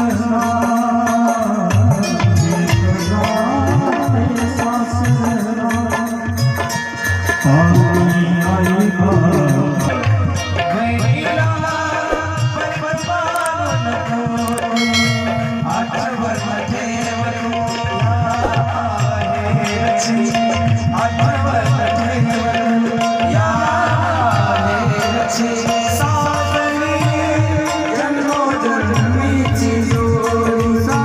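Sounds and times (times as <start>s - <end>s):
tabla and dholak drumming: 0.0s - 31.0s
wavering melody line: 14.7s - 16.3s.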